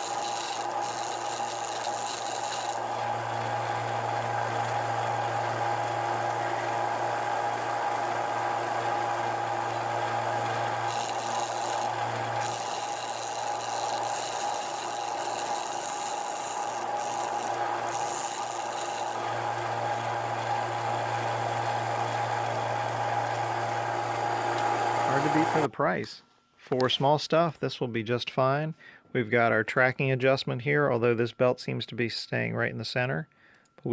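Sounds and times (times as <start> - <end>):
belt sander humming: 0.0 - 25.7.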